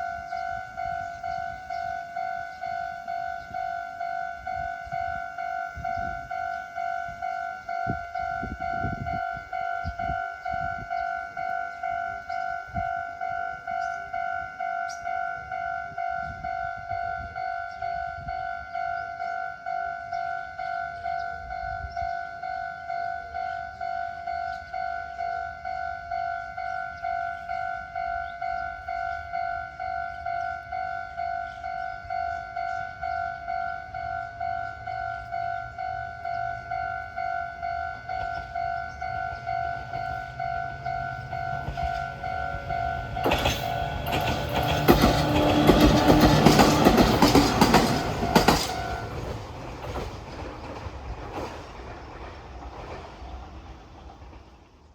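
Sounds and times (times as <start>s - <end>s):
level-crossing alarm ringing: 0.0s - 49.5s
train rumbling over crossing: 0.0s - 54.9s
wheel clacks: 41.1s - 53.3s.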